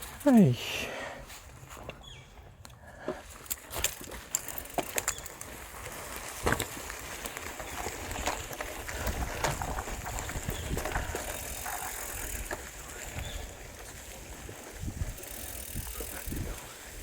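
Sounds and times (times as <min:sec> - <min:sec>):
bicycle clicks and rattles: 0:02.6 - 0:17.0
wind rumbling on microphone: 0:07.6 - 0:17.0.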